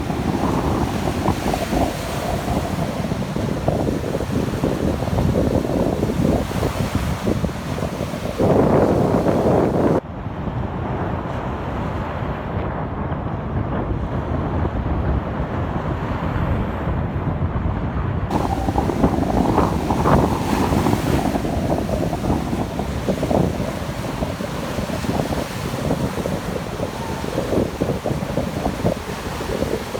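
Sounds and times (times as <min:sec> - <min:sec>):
sea surf: 0:00.0 - 0:10.0, 0:18.3 - 0:29.9
wind buffeting microphone: 0:00.0 - 0:29.9.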